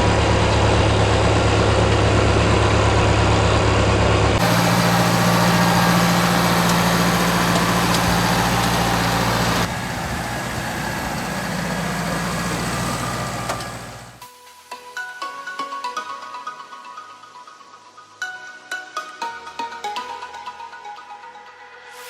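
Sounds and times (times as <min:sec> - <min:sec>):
heavy engine running: 0:00.0 - 0:14.2.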